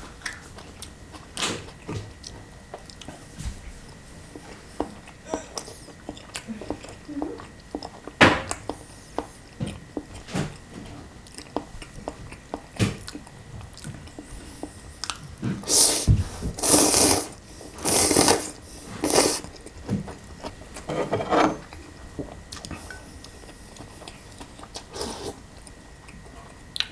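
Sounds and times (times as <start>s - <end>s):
chewing with light clicks: 0.2s - 15.6s, 22.2s - 26.9s
slurping noodles: 15.6s - 19.6s.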